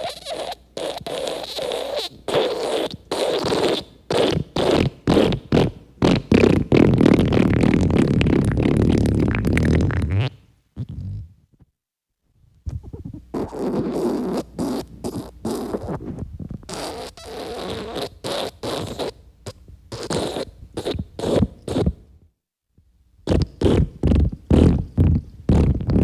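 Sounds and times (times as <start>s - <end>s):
wet farts: 0.0s - 11.4s, 23.3s - 26.0s.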